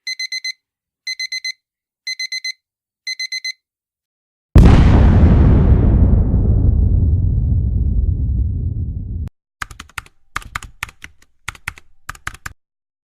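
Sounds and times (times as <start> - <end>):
alarm clock beeping: 0.0 - 3.6.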